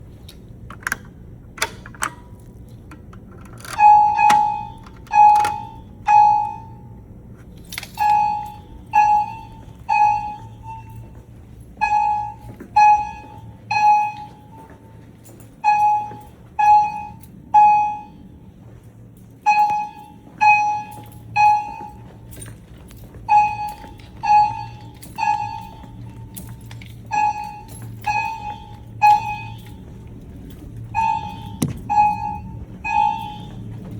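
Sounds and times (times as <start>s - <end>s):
pull station clicks: 0.6s - 5.8s
fire alarm tones: 1.6s - 7.1s, 7.7s - 18.5s, 19.4s - 22.6s, 23.2s - 33.9s.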